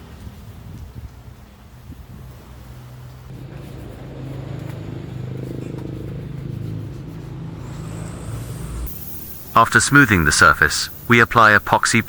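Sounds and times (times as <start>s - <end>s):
motor humming: 7.4s - 11.2s.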